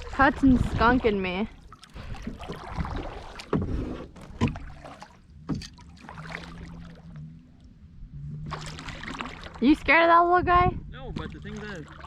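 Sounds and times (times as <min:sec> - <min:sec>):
water sloshing: 0:00.0 - 0:12.0
knocks against kayak hull: 0:03.4 - 0:04.6, 0:05.4 - 0:05.8.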